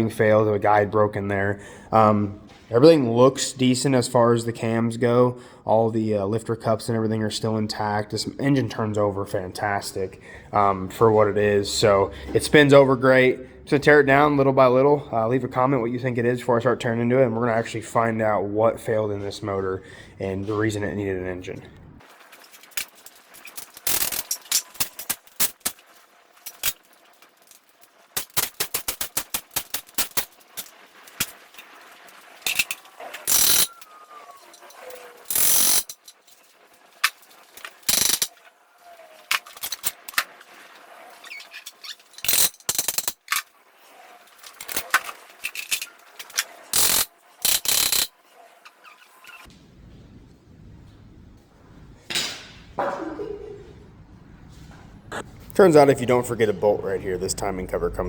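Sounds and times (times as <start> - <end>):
tools clinking: 22.6 - 25.8, 26.4 - 33.9, 34.5 - 38.4, 39.3 - 40.3, 41.2 - 43.5, 44.4 - 48.1
ratchet wrench clicking: 23.8 - 25.6, 32.5 - 33.8, 35.3 - 36.1, 37.9 - 38.3, 42.2 - 43.2, 46.8 - 48.1.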